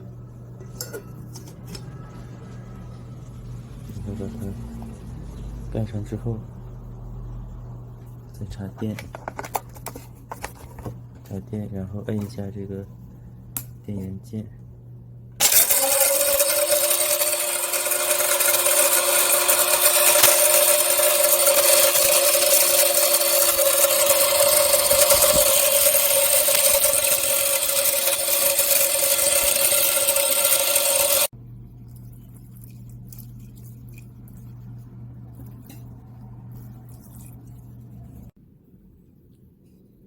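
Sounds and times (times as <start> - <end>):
electric grinder whirring: 15.4 - 31.3.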